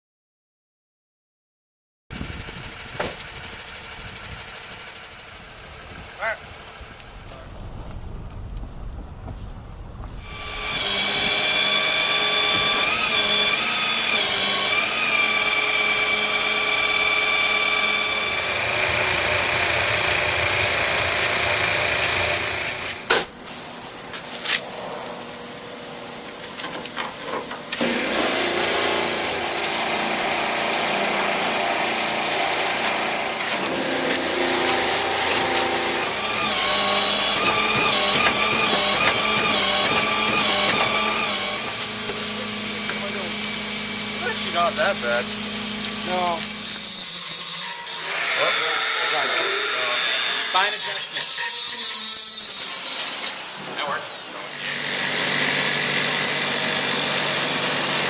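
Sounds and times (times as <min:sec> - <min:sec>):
power tool whining: 0:10.1 - 0:58.0
power tool clicks: 0:32.5 - 0:44.1.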